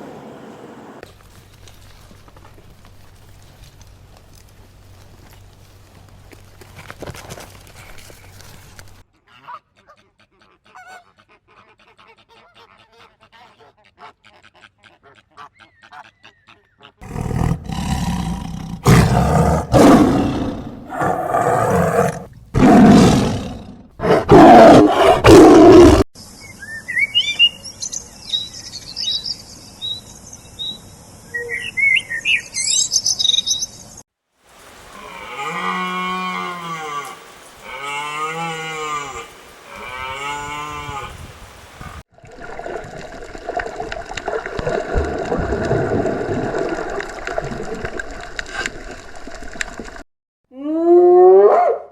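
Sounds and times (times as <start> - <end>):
animal growling roars: 17.0 - 26.0
high bird-like chirps: 26.3 - 34.0.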